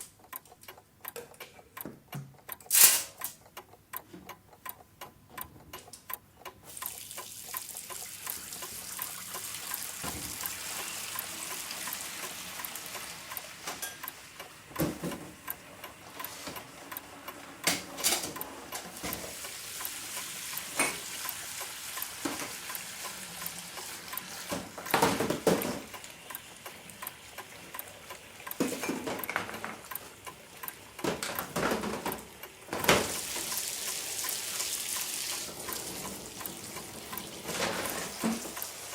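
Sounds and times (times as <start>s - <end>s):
egg sizzling in a pan: 6.7s - 14.7s, 18.9s - 24.8s, 25.4s - 29.2s, 32.3s - 38.9s
kitchen utensils clattering: 13.6s - 14.0s, 20.7s - 21.1s, 24.5s - 25.9s, 28.6s - 29.8s, 31.1s - 33.1s, 37.4s - 38.6s.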